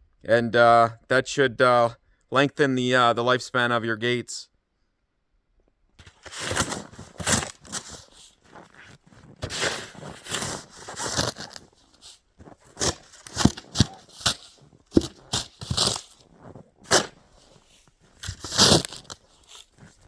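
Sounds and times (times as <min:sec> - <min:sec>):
snow crunching and scraping: 0:06.0 - 0:20.0.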